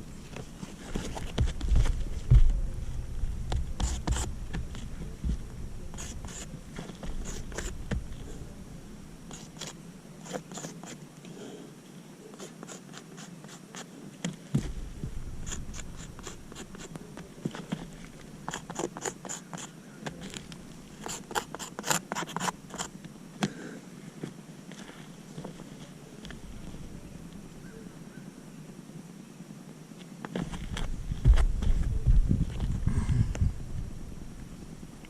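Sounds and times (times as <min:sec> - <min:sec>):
sharp clicks and light scrapes: 0:15.4 - 0:22.9.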